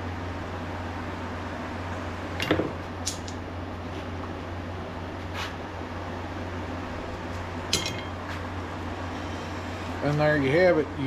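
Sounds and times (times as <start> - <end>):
steady background hum: 0.0 - 11.0
metal parts clicking and tapping: 7.7 - 8.1.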